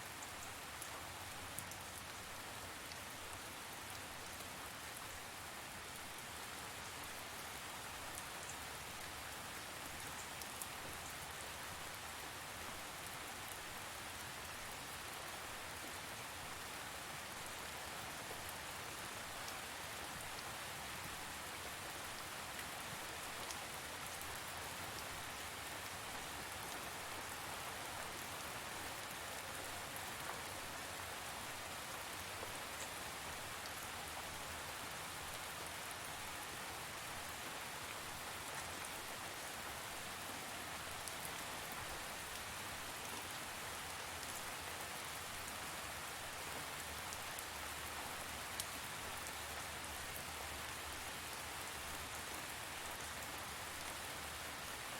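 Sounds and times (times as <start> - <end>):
steady rain hiss: 0.0 - 54.9.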